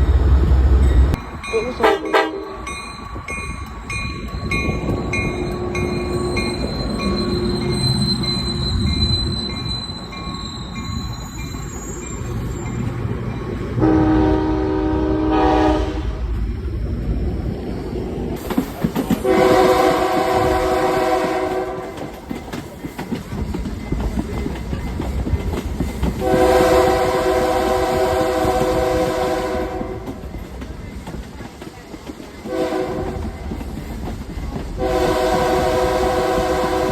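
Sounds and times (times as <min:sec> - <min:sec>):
passing train rumble: 0:00.0 - 0:36.9
locomotive air horn blasts: 0:01.7 - 0:02.6, 0:13.8 - 0:16.2, 0:19.2 - 0:22.0, 0:26.2 - 0:30.1, 0:32.5 - 0:33.2, 0:34.8 - 0:36.9.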